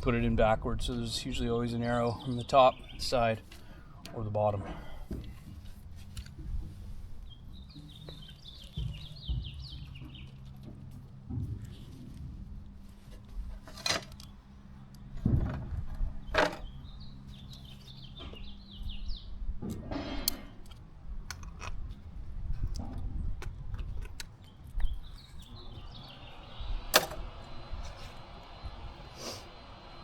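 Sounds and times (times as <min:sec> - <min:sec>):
small bird chirping: 0:07.2 - 0:10.5
sharp clicks: 0:26.9 - 0:27.3.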